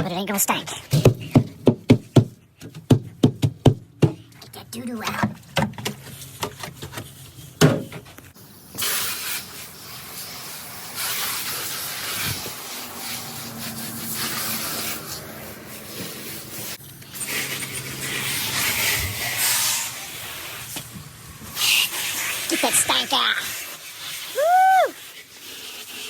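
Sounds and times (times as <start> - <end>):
knocks: 0.9 - 4.2
water spraying inside refrigerator: 5.9 - 26.0.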